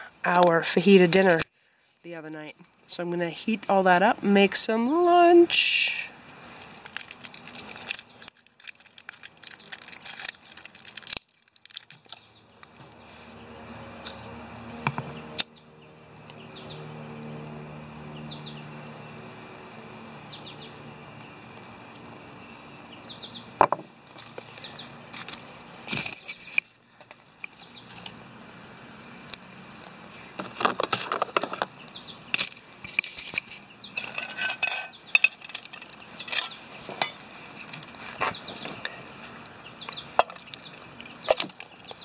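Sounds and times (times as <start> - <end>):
crinkling and rustling: 6.4 - 13.3, 23.7 - 28.2, 29.8 - 31.8, 32.4 - 39.4
metal cookware clinking: 34.0 - 37.2.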